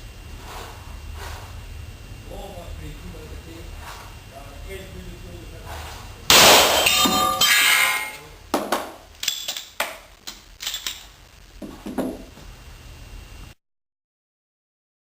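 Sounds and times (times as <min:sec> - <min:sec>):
steel targets ringing from hits: 0:06.3 - 0:08.3.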